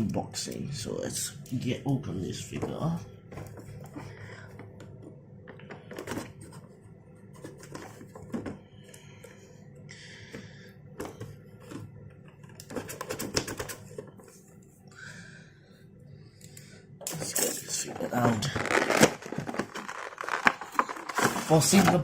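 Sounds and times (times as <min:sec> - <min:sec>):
packaging rustles: 0:18.0 - 0:22.0.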